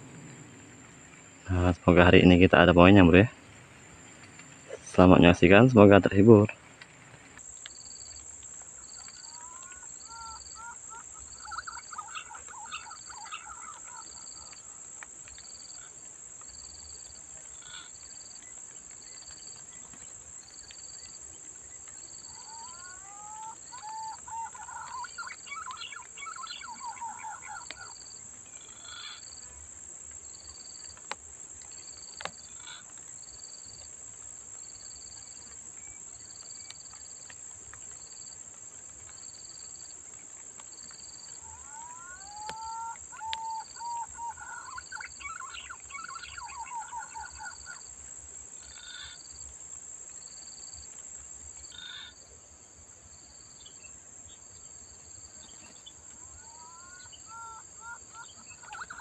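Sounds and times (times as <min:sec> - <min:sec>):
insects droning: 0:00.0 - 0:59.0
bird singing whistled notes: 0:43.2 - 0:47.7.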